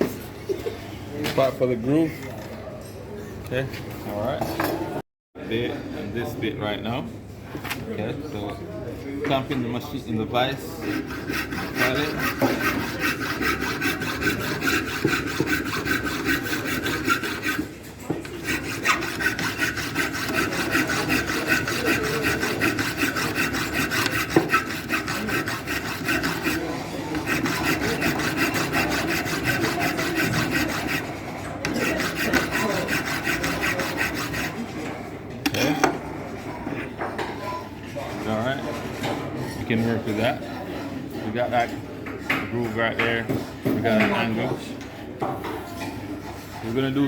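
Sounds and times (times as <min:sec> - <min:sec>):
milling cutter rasping through steel: 0:10.5 - 0:34.7.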